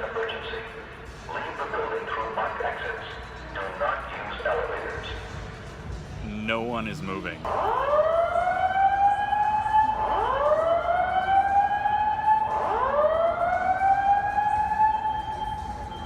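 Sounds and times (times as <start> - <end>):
fire alarm whoop: 7.7 - 16.0.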